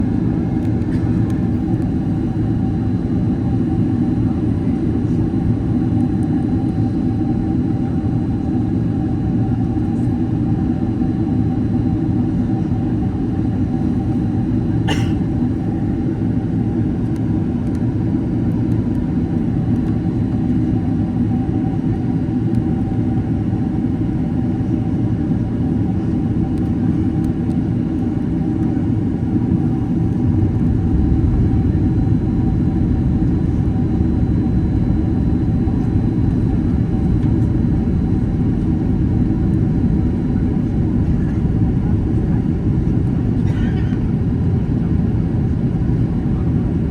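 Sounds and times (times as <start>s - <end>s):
airplane cabin rumble: 0.0s - 46.9s.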